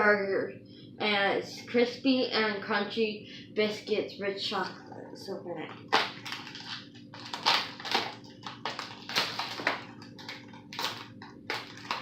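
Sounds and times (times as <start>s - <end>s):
plastic packaging crinkling: 5.7s - 12.0s.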